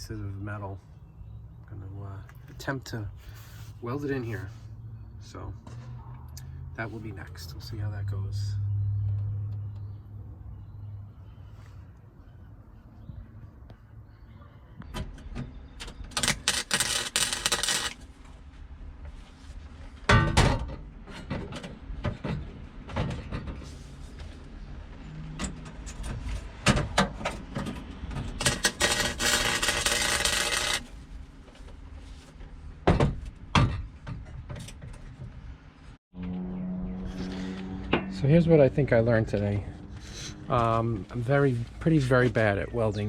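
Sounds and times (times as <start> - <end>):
welder crackling: 16.1 - 18.1, 28.4 - 31.0.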